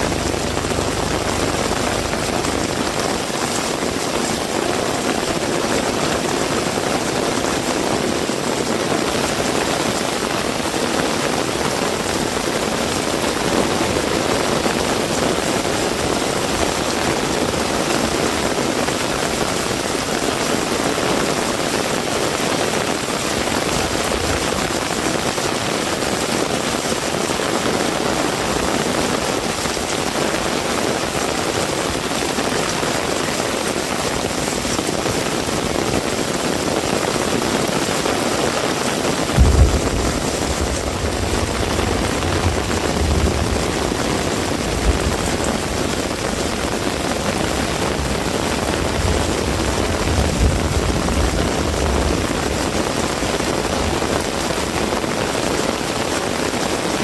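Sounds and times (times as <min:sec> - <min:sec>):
heavy rain falling: 0:00.0 - 0:57.0
brief low thump: 0:39.4 - 0:43.1.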